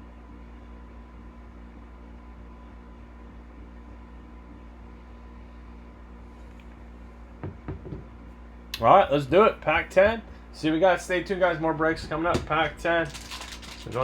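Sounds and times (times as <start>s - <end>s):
electrical hum and hiss: 0.0s - 14.0s
soft knocks: 7.4s - 8.1s, 11.5s - 13.1s.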